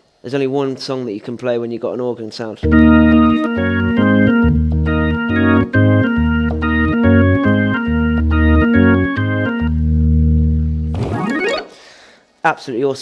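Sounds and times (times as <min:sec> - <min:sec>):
organ chords over bass line: 0:02.6 - 0:11.6.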